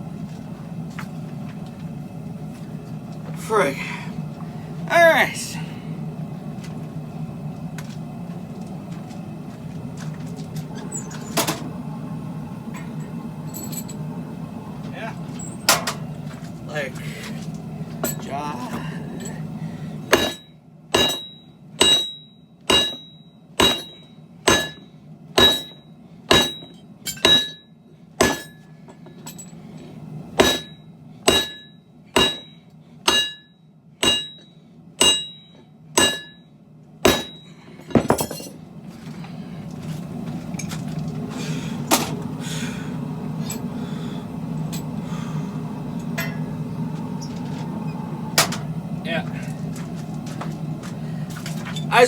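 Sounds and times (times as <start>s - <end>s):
steady low hum: 0.0s - 52.0s
hammer striking steel on anvil: 20.1s - 24.8s, 25.4s - 29.4s, 30.4s - 36.4s, 37.0s - 38.5s, 46.1s - 46.5s.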